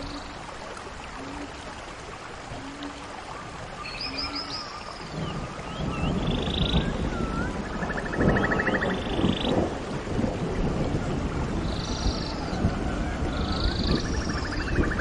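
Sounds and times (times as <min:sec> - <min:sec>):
steady rain: 0:00.0 - 0:15.0
low thunder rumbling: 0:05.0 - 0:15.0.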